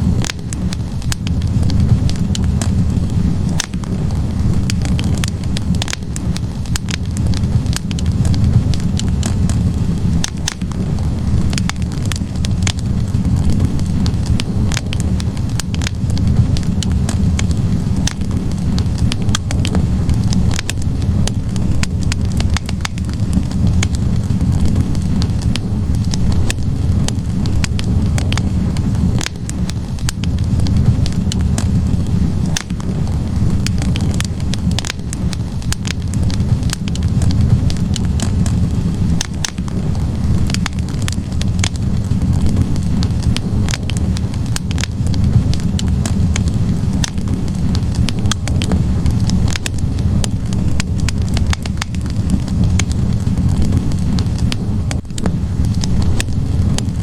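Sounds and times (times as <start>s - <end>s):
fire crackling and popping: 0.0s - 57.0s
fireplace flames rushing: 0.0s - 57.0s.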